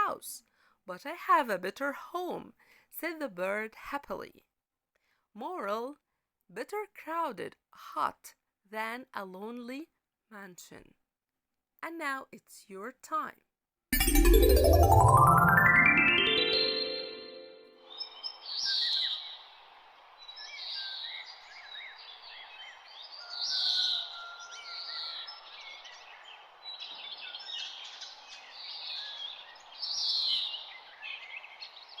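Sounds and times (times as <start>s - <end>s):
piano note: 14.0s - 17.9s
birds chirping and singing: 20.4s - 32.0s.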